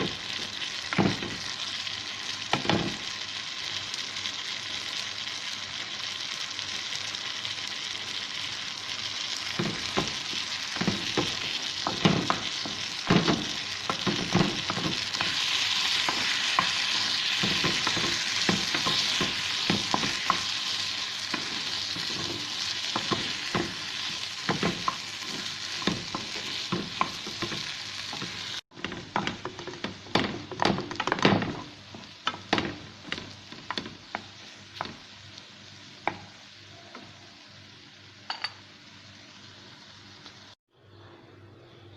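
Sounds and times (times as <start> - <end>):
vegetables sizzling in oil: 0.0 - 40.6
spatula scraping a pan: 10.8 - 29.4.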